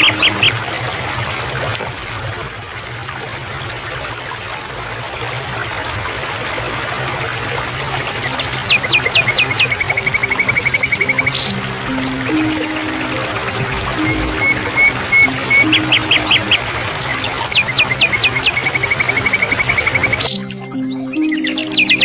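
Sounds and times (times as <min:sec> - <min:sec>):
bird whistling and trilling: 0:00.0 - 0:00.6, 0:08.3 - 0:20.3
water trickling: 0:00.0 - 0:22.0.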